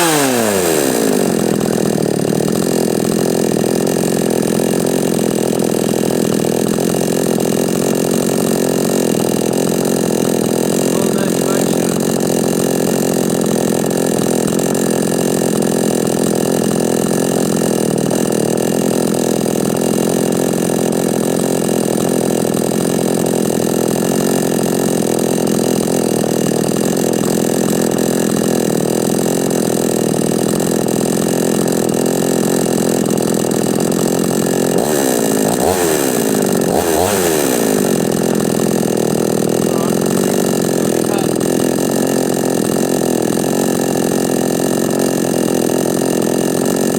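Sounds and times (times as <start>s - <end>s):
chainsaw engine running and revving: 0.0s - 46.9s.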